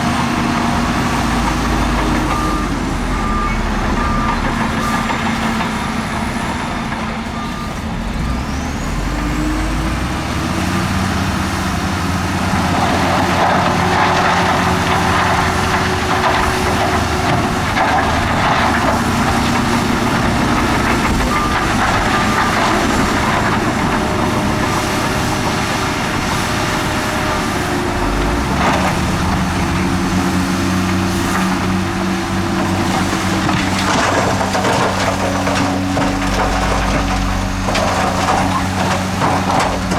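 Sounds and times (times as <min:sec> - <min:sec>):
diesel machinery engines: 0:00.0 - 0:39.9
scraping rattle of dirt and rock: 0:08.2 - 0:39.9.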